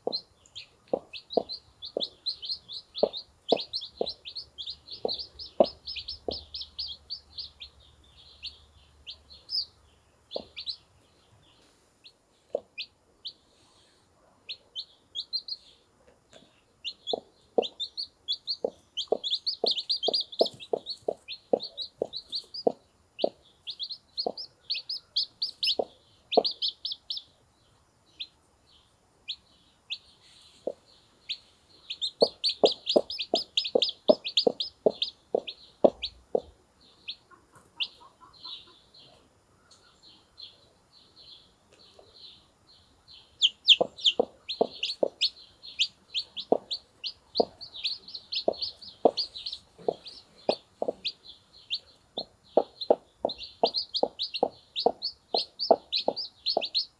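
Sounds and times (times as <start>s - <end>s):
chicks peeping: 0.0s - 56.9s
hen clucking low: 32.0s - 38.8s, 43.4s - 51.2s, 52.2s - 56.9s.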